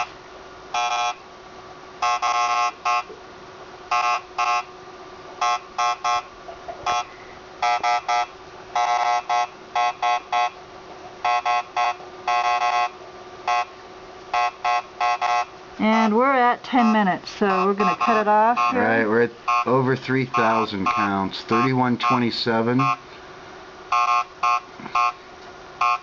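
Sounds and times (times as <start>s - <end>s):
geiger counter beeping: 6.9s - 10.6s, 14.4s - 23.0s, 23.9s - 25.2s, 25.8s - 26.0s.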